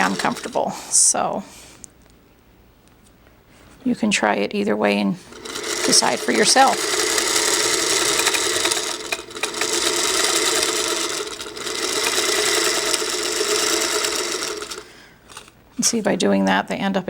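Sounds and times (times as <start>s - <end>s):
sewing machine stitching: 0.0s - 1.0s, 5.2s - 15.5s.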